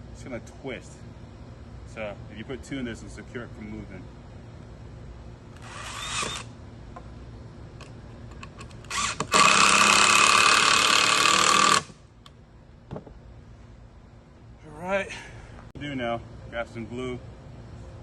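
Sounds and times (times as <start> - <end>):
power drill driving screws into wood: 5.6 - 6.5, 8.9 - 12.0.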